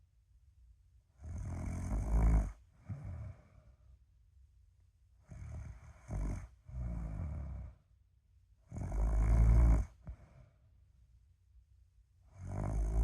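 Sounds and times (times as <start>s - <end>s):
person snoring: 1.2s - 3.6s, 5.3s - 7.8s, 8.7s - 10.4s, 12.3s - 13.0s.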